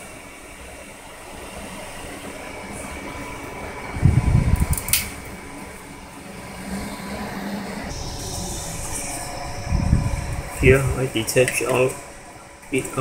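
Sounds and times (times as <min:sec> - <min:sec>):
faint whine tones: 0:00.0 - 0:13.0
printer fan humming: 0:00.0 - 0:13.0
low rumble and thumping: 0:03.9 - 0:05.0, 0:07.9 - 0:11.2.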